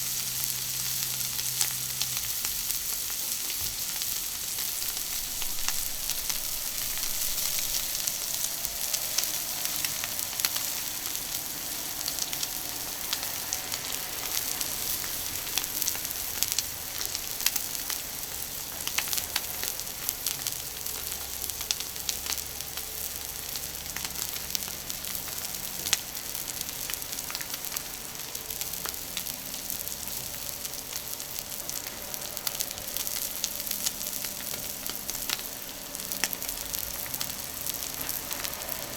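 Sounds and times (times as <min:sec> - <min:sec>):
steak sizzling on a griddle: 0:00.0 - 0:38.9
small pops and crackles: 0:12.0 - 0:38.9.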